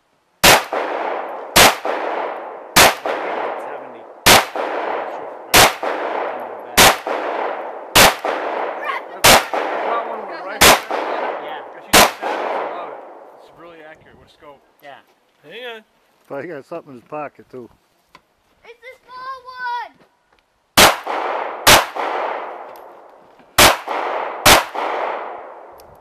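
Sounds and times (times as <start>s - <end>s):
pistol shots with echo: 0.4s - 13.3s, 20.8s - 22.7s, 23.6s - 25.8s.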